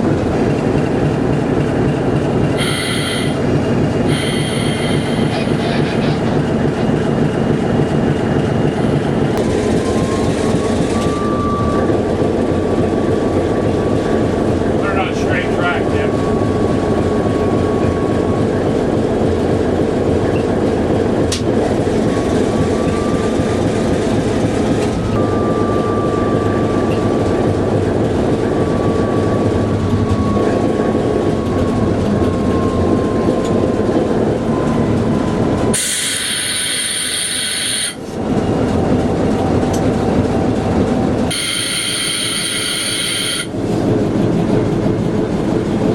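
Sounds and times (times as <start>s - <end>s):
train rumbling on rails: 0.0s - 45.9s
high-pitched wheel squeal: 2.6s - 3.4s, 4.1s - 5.6s, 35.6s - 38.0s, 41.3s - 43.6s.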